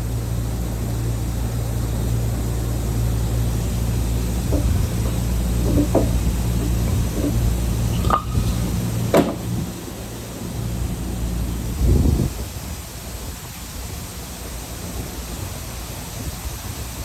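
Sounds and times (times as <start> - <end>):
low machine hum: 0.0 - 13.6
light knocks: 4.2 - 9.8.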